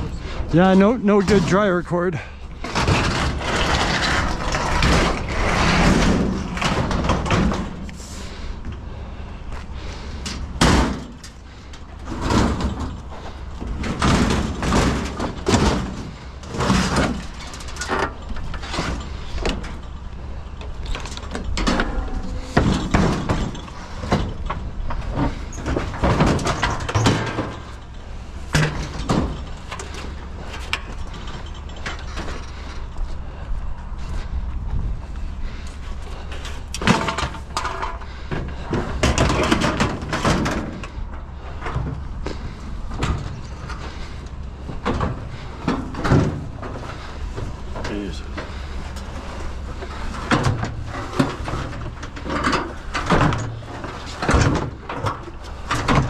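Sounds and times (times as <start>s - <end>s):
sheet metal bangs and scrapes: 2.6s - 7.9s, 10.5s - 17.6s.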